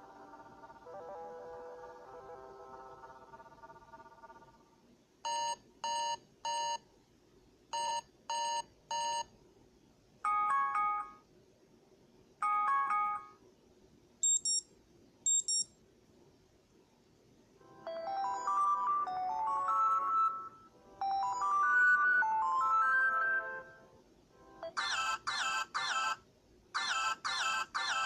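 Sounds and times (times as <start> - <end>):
high-pitched double beeps: 14.2 - 14.6
short electronic beeps: 14.2 - 14.7, 15.3 - 15.7.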